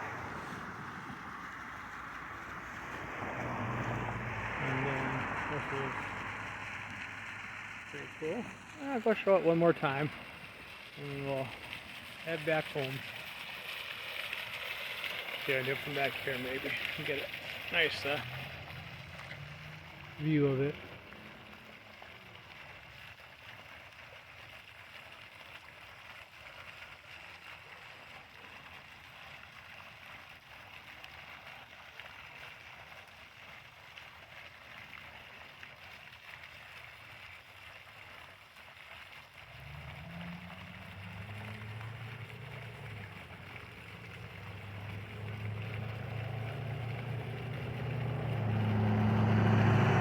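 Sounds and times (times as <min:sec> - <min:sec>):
vehicle engine hum: 0:00.0 - 0:23.0, 0:39.4 - 0:50.0
water fountain splashing: 0:00.0 - 0:50.0.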